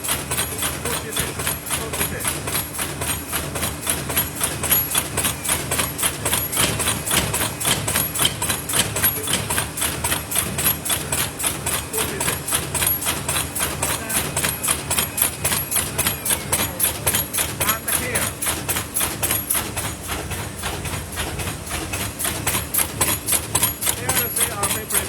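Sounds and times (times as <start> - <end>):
machine hum: 0.0 - 25.0
machine mechanical clatter: 0.0 - 25.0.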